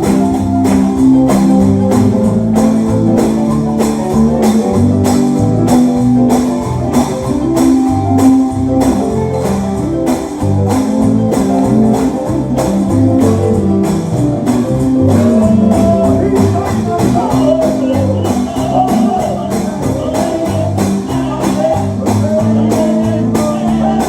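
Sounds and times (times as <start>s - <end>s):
bass line: 0.0s - 24.0s
guitar chords: 0.0s - 24.0s
steady drum beat: 0.0s - 24.0s
person singing: 15.0s - 24.0s.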